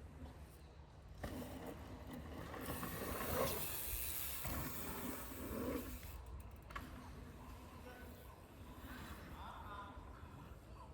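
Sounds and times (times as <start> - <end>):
bike tyres rolling on dirt: 1.1 - 7.3.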